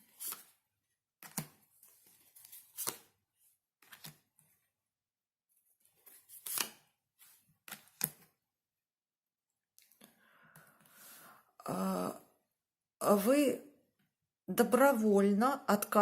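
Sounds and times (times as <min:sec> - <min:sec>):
cards rustling: 0:00.0 - 0:00.6, 0:01.2 - 0:03.2, 0:03.8 - 0:04.4, 0:05.9 - 0:08.3
cards snapping and tapping: 0:01.2 - 0:01.6, 0:02.7 - 0:03.1, 0:07.7 - 0:08.3.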